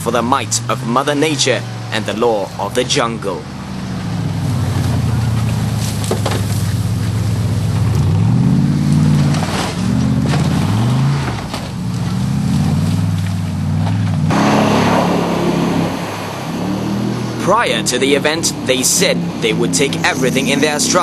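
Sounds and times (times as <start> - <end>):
off-road engine revving: 0.0 - 21.0.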